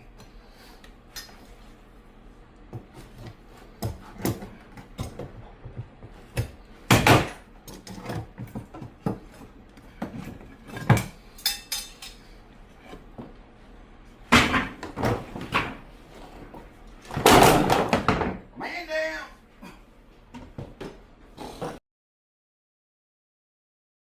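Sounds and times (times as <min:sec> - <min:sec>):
hard objects knocking and clattering: 0:17.1 - 0:18.5.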